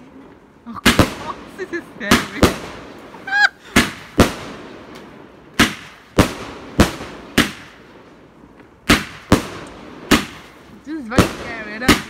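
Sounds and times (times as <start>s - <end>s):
firework bangs: 0.7s - 12.0s.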